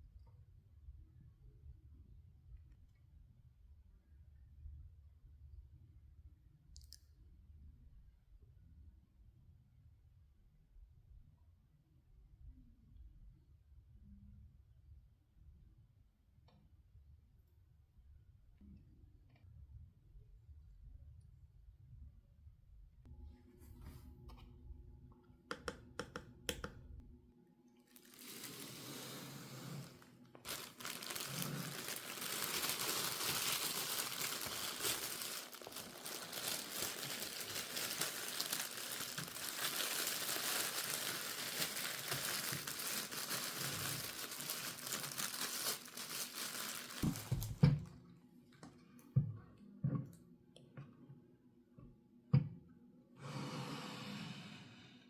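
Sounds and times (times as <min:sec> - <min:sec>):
packaging crinkling and rustling: 0:27.9 - 0:47.6.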